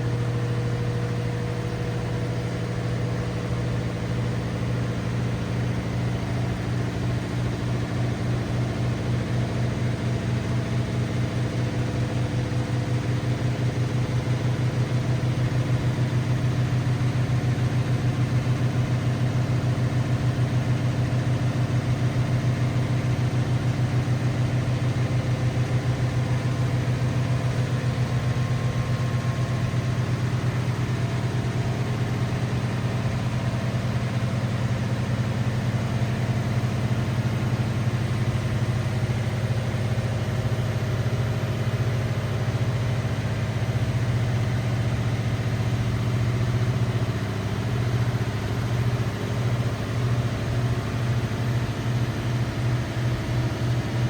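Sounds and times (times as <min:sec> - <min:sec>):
washing machine motor humming: 0:08.8 - 0:40.4.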